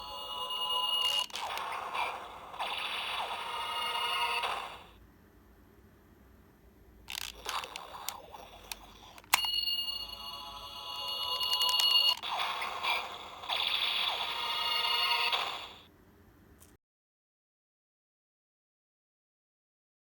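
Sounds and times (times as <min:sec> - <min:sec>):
steady high ringing tone: 0:00.0 - 0:01.3, 0:09.3 - 0:12.3
toy electronic sound effects: 0:00.0 - 0:04.9, 0:07.1 - 0:15.8
handling clicks: 0:07.1 - 0:09.6.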